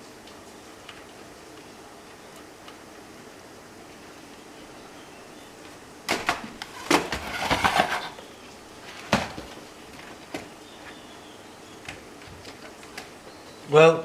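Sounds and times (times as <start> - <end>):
faint steady hiss: 0.0 - 14.0.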